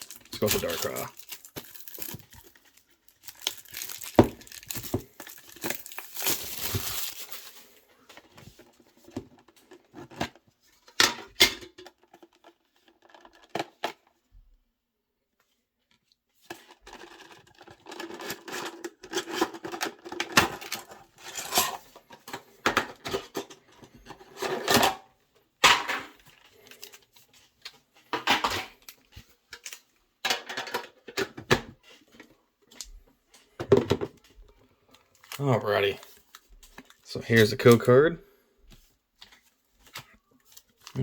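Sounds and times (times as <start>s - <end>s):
packaging rustling: 0.0s - 8.8s, 39.2s - 41.0s.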